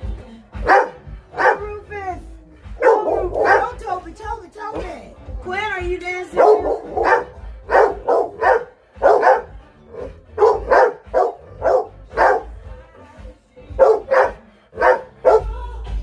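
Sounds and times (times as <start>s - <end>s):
music: 0.0s - 16.0s
dog barking: 0.6s - 1.8s, 2.8s - 3.8s, 6.3s - 12.6s, 13.6s - 15.5s.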